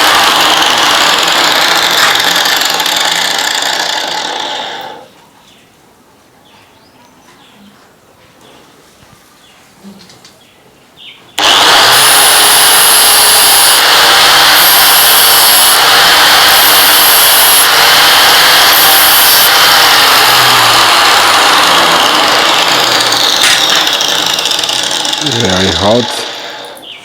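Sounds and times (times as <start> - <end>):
electric grinder grinding metal: 0.0 - 5.1, 11.4 - 26.9.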